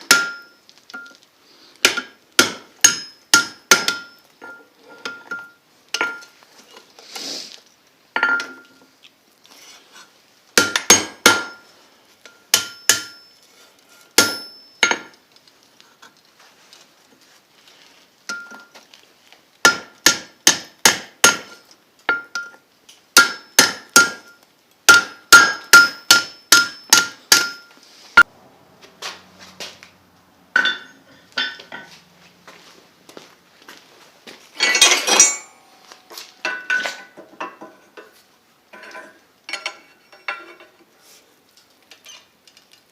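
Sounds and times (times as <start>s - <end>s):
hammer striking steel on anvil: 0.0s - 0.6s, 1.8s - 6.2s, 10.6s - 11.7s, 12.3s - 13.4s, 14.2s - 15.2s, 19.7s - 22.6s, 23.2s - 27.8s, 30.5s - 31.9s, 34.6s - 37.7s
anvil ringing: 12.5s - 13.4s, 14.2s - 15.1s, 23.2s - 27.7s, 30.5s - 31.9s, 34.6s - 37.1s.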